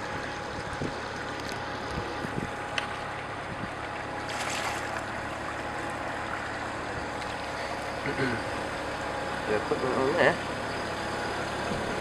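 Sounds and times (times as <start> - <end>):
boat engine running: 0.0 - 12.0
water churning: 0.0 - 12.0
wind on microphone: 1.9 - 2.6, 3.4 - 3.8.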